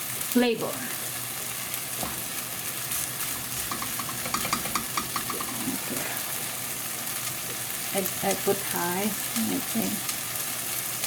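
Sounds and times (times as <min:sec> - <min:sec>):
onions sizzling in a frying pan: 0:00.0 - 0:11.0
light ticks from stirring: 0:03.7 - 0:05.8.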